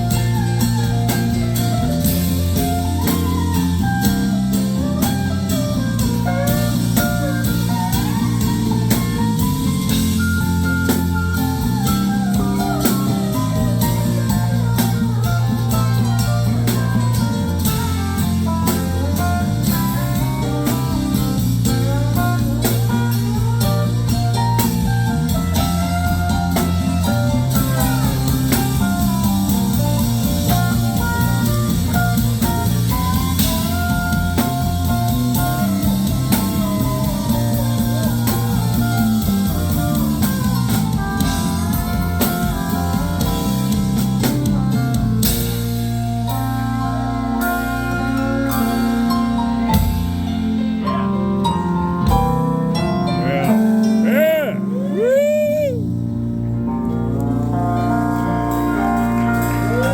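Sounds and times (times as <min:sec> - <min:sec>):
rock band playing: 0:00.0 - 0:59.9.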